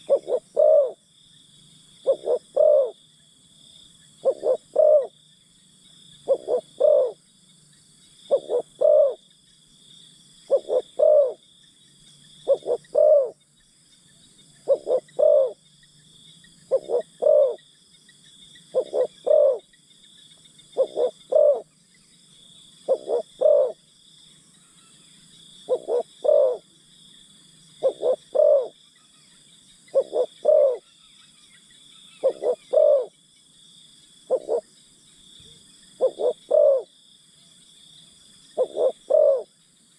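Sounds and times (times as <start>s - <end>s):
dove cooing: 0.0s - 1.0s, 2.0s - 3.0s, 4.2s - 5.2s, 6.2s - 7.2s, 8.3s - 9.2s, 10.5s - 11.4s, 12.4s - 13.4s, 14.6s - 15.6s, 16.7s - 17.7s, 18.7s - 19.7s, 20.8s - 21.7s, 22.9s - 23.8s, 25.6s - 26.7s, 27.8s - 28.8s, 29.9s - 30.9s, 32.1s - 33.1s, 34.3s - 34.7s, 36.0s - 36.9s, 38.6s - 39.6s
insects droning: 0.0s - 39.9s.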